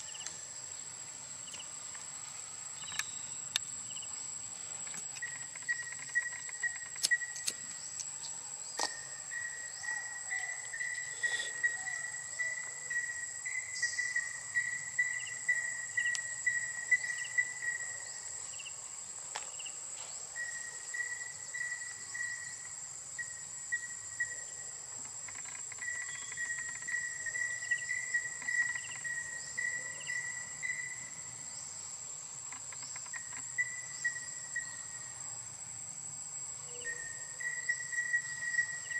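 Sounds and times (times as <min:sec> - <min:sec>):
insects buzzing: 0:00.0 - 0:38.9
insect pulsing trill: 0:04.9 - 0:18.8, 0:20.4 - 0:35.4, 0:36.6 - 0:38.9.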